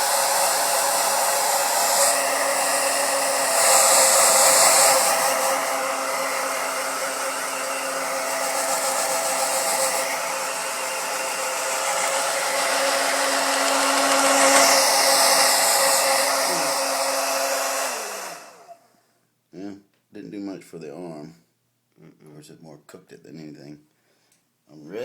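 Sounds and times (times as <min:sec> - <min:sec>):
hair dryer running: 0:00.0 - 0:18.9.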